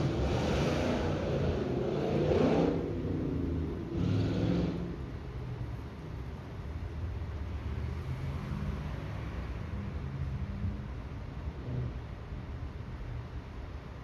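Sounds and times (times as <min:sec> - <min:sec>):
rushing noise: 0:00.0 - 0:05.0.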